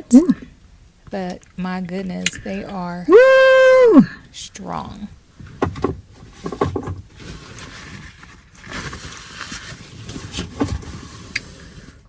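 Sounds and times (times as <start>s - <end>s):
woman groaning: 3.1s - 4.2s.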